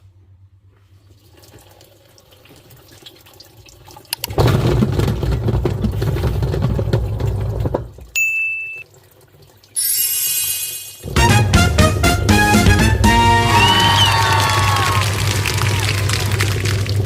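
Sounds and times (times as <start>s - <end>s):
washing machine sloshing churn: 0.9s - 8.1s.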